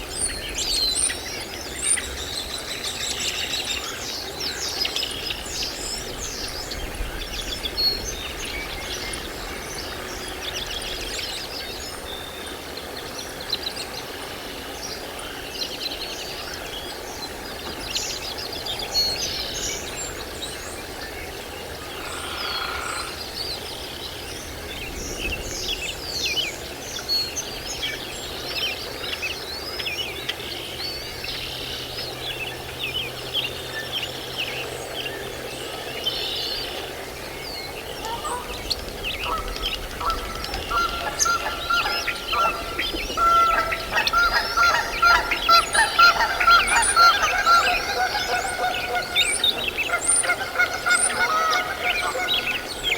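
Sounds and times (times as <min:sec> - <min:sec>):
birds chirping: 0:33.4 - 0:52.9.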